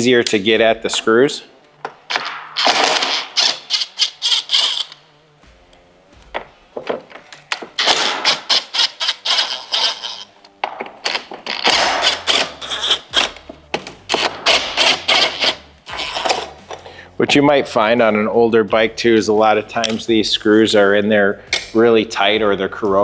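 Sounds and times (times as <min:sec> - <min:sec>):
ratchet clicking: 0:02.1 - 0:05.0, 0:07.8 - 0:10.4, 0:11.1 - 0:13.5, 0:14.1 - 0:16.9.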